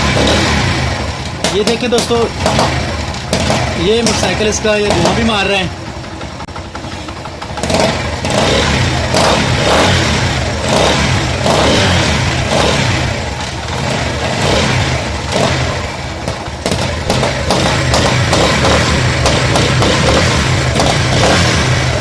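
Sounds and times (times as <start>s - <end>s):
engine head noise: 0.0s - 22.0s
motorcycle engine revving: 0.0s - 22.0s.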